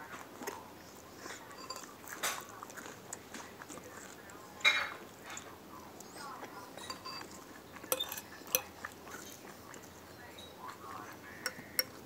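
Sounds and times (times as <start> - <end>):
spoon scraping bowl: 0.8 - 2.6, 4.6 - 12.0
spoon clinking on bowl: 1.5 - 2.5, 6.7 - 8.9, 11.3 - 12.0.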